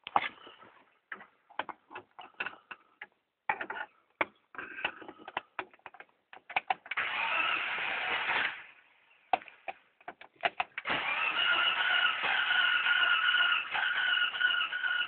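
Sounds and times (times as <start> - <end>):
starter cranking engine: 6.9 - 8.6, 10.8 - 15.0.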